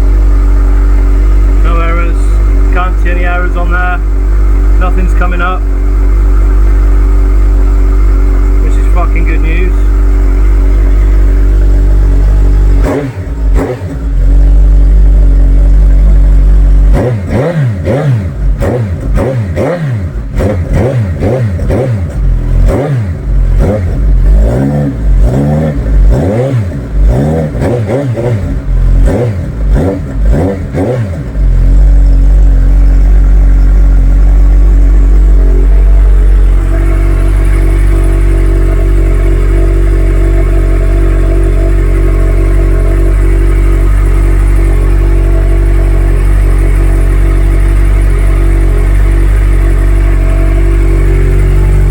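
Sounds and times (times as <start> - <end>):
motorcycle engine idling and revving: 0.0 - 51.9.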